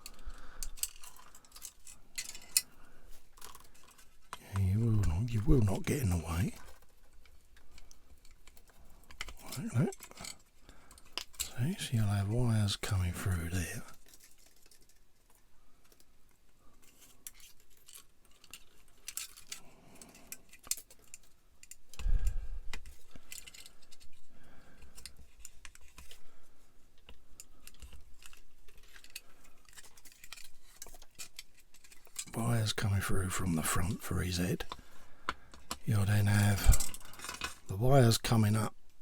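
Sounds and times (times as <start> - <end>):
plastic parts clicking and tapping: 0.0 - 5.2, 6.5 - 11.5, 16.8 - 26.2, 27.0 - 32.3, 34.6 - 35.9, 36.6 - 37.7.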